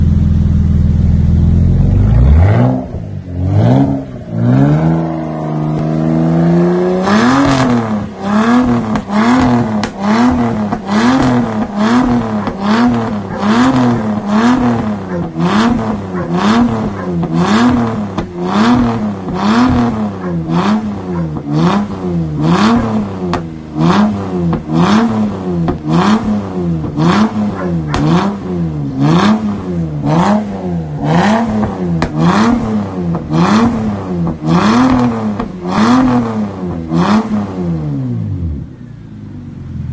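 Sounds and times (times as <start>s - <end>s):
car engine revving: 0.0s - 39.9s
exhaust crackles and pops: 7.0s - 37.3s.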